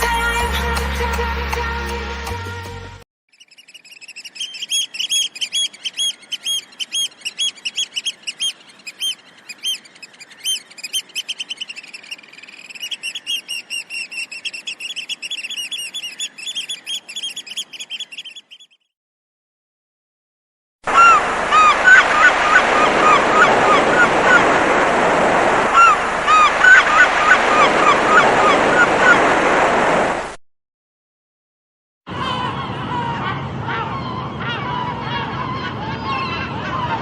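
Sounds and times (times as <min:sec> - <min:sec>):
seagull chirping calls: 0:03.3 - 0:18.9, 0:20.9 - 0:24.5, 0:25.7 - 0:29.2, 0:32.1 - 0:37.0.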